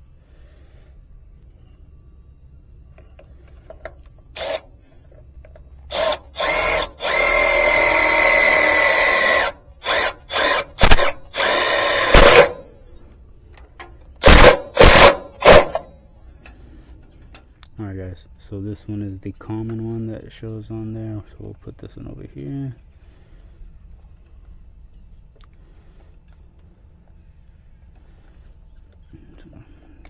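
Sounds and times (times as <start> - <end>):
power drill whining: 4.3 - 4.7, 5.8 - 12.7, 14.2 - 15.9.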